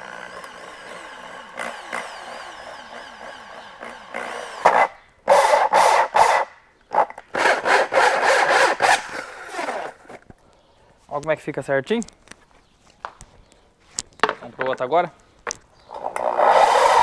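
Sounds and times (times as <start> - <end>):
electric drill motor whining: 0.0 - 6.5, 16.0 - 17.0
hole saw grinding through wood: 0.0 - 10.2, 15.9 - 17.0.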